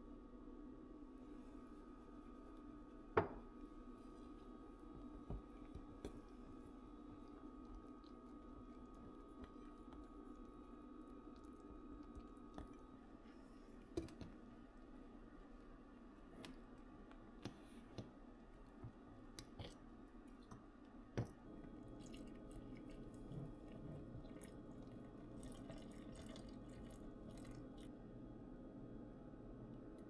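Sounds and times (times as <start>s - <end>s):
low steady hum: 0.0s - 30.0s
faint clicks and light taps: 16.2s - 21.4s.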